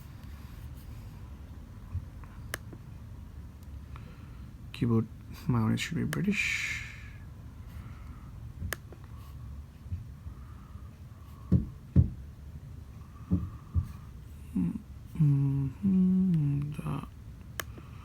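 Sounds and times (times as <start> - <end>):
click: 2.5 - 2.7
soft low thumps: 9.8 - 10.2, 11.4 - 12.4, 13.0 - 14.2
man humming: 14.4 - 17.2.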